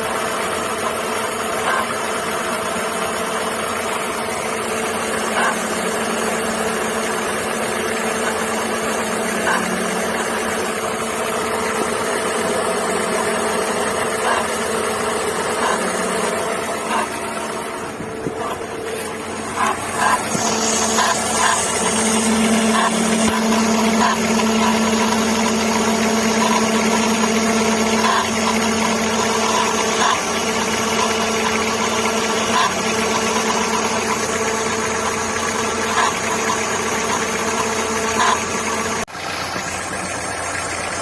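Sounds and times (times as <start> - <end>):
car engine idling with whine: 0.0 - 41.0
light engine tick: 19.6 - 41.0.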